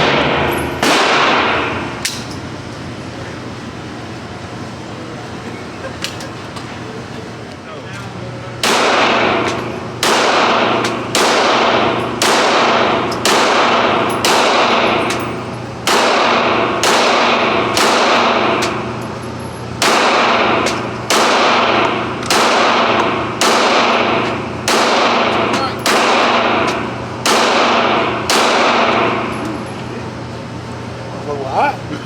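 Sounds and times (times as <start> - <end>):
gunshots echoing indoors: 0.0 - 2.4, 8.6 - 29.6.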